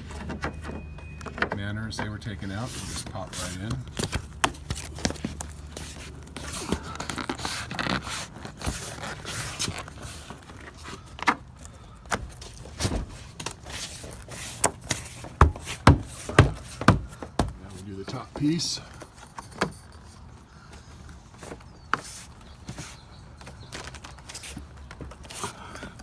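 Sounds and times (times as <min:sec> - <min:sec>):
scraping and handling noise: 0:00.0 - 0:25.7.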